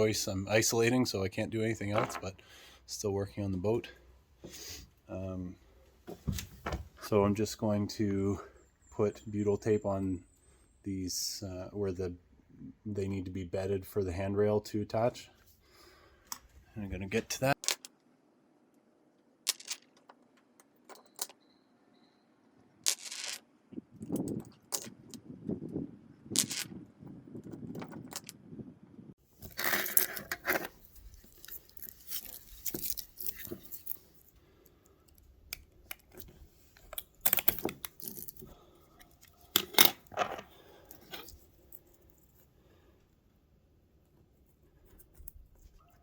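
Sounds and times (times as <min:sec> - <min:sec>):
tape rustling and tearing: 0:29.4 - 0:34.4, 0:36.0 - 0:38.5.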